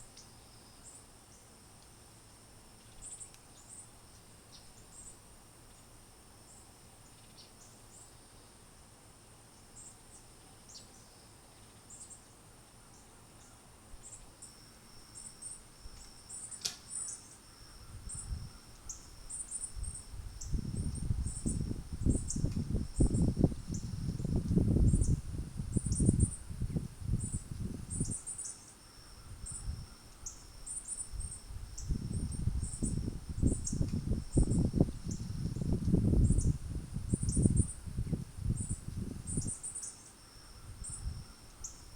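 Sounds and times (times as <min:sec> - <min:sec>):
insect drone: 0:00.0 - 0:41.9
wind buffeting microphone: 0:19.8 - 0:28.2, 0:31.1 - 0:39.6.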